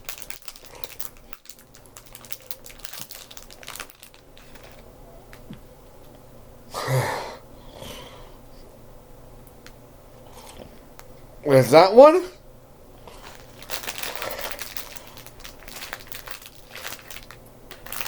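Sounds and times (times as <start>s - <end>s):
plastic crinkling: 0.0s - 5.6s, 13.0s - 18.0s.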